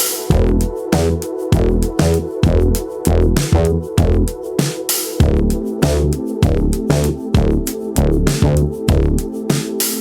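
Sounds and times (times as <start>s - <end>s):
drum machine beat: 0.0s - 10.0s
electronic music: 0.0s - 10.0s
deep bass line: 0.3s - 4.4s, 5.2s - 9.3s.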